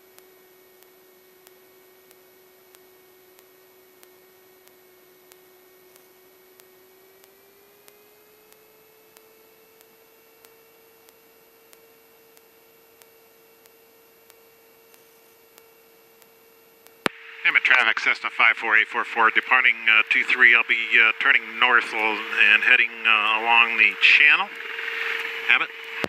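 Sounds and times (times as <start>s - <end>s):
faint regular ticks: 0.0s - 17.1s
electrical whine and hiss: 0.0s - 26.0s.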